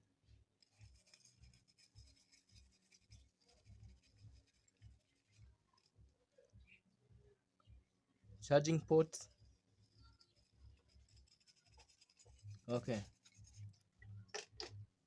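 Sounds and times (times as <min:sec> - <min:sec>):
scrubbing strokes on circuit board: 0:00.6 - 0:06.2, 0:09.2 - 0:13.9.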